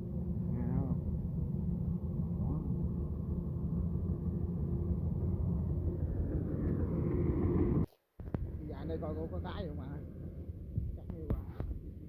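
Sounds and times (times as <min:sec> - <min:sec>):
harvester engine droning: 0:00.0 - 0:12.0.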